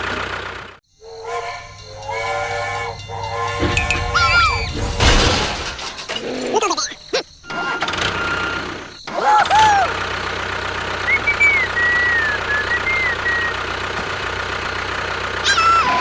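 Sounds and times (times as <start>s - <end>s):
engine running steadily: 1.6s - 5.8s, 7.6s - 16.0s.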